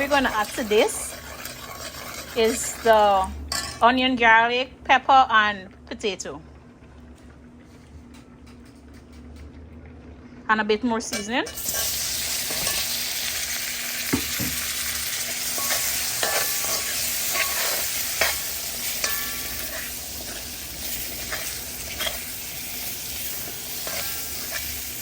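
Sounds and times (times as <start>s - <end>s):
food sizzling in hot oil: 0.0s - 3.8s, 11.4s - 25.0s
spoon clinking and scraping pan: 0.0s - 3.8s, 11.1s - 13.5s, 14.1s - 25.0s.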